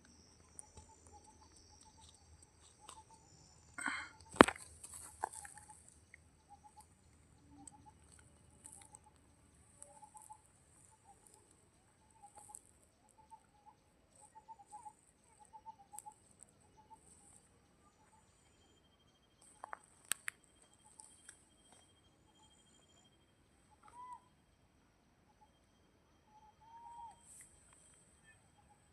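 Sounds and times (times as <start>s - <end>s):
faint bird chirps: 0.0s - 4.4s, 5.0s - 28.9s
soft ticks: 4.8s - 17.4s, 19.4s - 21.9s.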